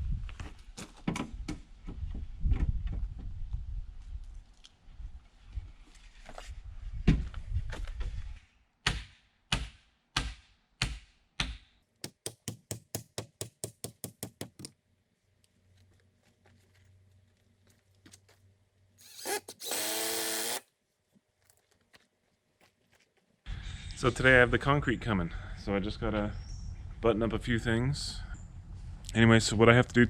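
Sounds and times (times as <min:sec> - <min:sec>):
hammer knocks on wood: 0:08.9 - 0:14.7
power drill running: 0:19.0 - 0:20.6.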